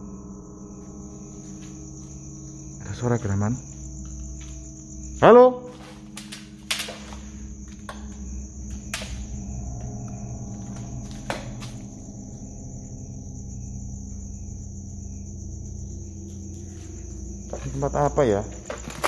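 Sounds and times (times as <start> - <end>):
crickets chirring: 0.0 - 19.0
knocks or footfalls on debris: 5.7 - 9.4, 18.5 - 19.0
low steady rumble: 6.0 - 18.9.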